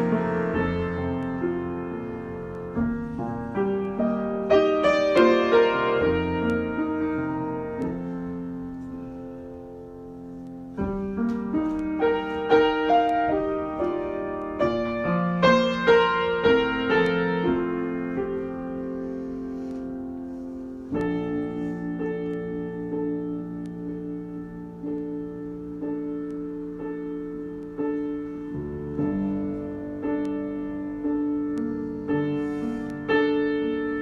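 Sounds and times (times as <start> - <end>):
solo piano chords and phrases: 0.0 - 34.0.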